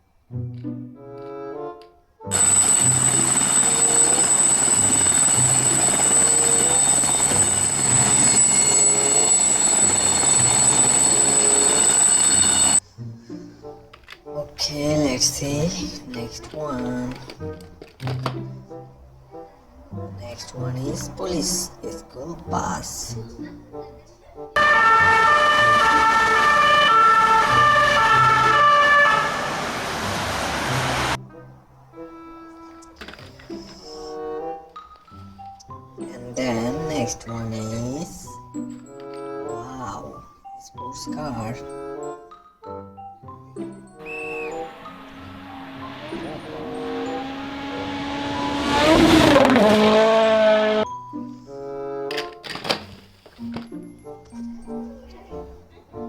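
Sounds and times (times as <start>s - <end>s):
electronic two-tone siren: 2.3s - 12.8s, 24.6s - 31.2s, 44.0s - 50.8s
simple electronic tune: 2.3s - 12.8s
toy helicopter rotor sound effect: 2.3s - 12.8s, 44.4s - 49.9s.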